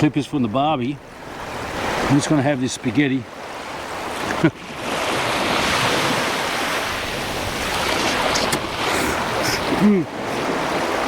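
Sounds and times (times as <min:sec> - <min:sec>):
surf washing on beach: 0:00.0 - 0:11.0
person humming: 0:09.0 - 0:10.2.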